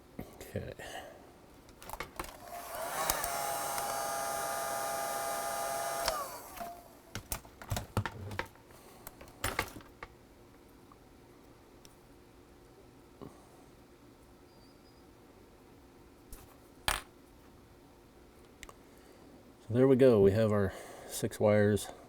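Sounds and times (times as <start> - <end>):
handling clicks and knocks: 1.6 - 2.4, 6.1 - 10.2
hot-air blower whine: 1.9 - 8.4.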